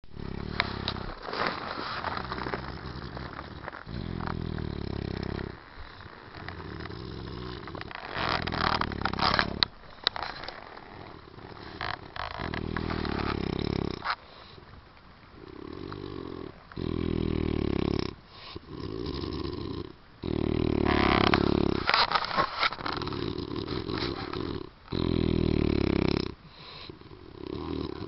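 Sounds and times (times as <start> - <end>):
man snoring heavily: 0.1 - 1.2, 2.1 - 9.7, 12.4 - 14.0, 15.5 - 21.8, 23.0 - 26.4, 27.4 - 28.0
sharp clicks and crackles: 0.2 - 14.2.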